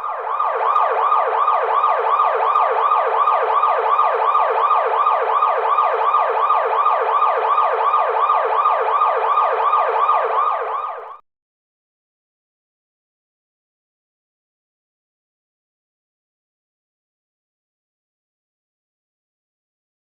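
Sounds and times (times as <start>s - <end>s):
car alarm siren: 0.0s - 11.2s.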